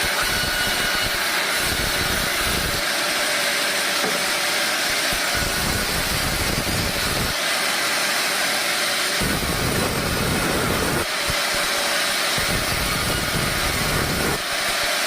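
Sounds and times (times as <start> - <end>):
sawmill machinery hissing: 0.0 - 15.0.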